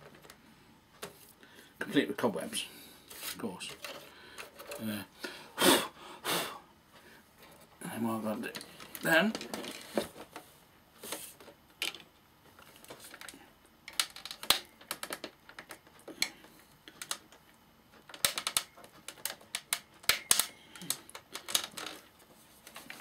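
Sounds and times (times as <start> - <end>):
hands clicking and tapping parts: 11.4 - 23.0.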